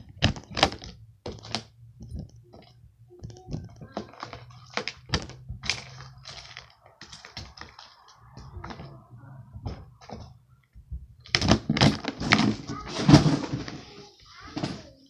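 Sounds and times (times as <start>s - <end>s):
toys clicking and tapping: 0.0s - 8.9s
faint steady hum: 0.0s - 12.8s.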